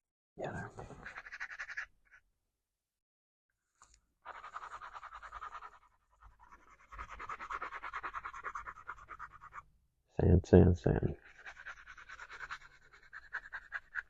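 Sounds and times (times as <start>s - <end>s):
hand sanding scratchy strokes: 11.2s - 14.0s.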